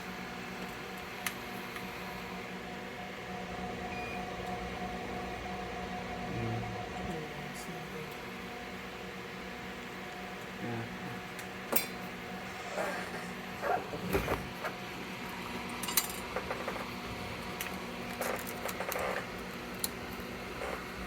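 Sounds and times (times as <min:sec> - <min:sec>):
electrical hum: 0:00.0 - 0:21.0.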